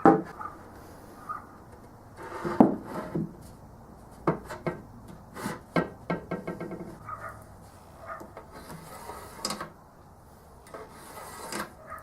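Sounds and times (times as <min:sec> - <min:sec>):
wood rubbing: 0:01.2 - 0:09.8, 0:10.7 - 0:12.0
wood boards knocking: 0:02.4 - 0:03.4, 0:05.7 - 0:07.0.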